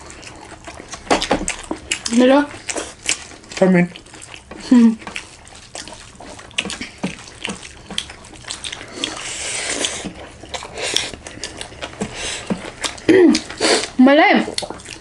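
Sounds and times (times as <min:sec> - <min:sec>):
chewing and lip-smacking: 0:00.0 - 0:15.0
wet mouth clicks: 0:04.4 - 0:15.0.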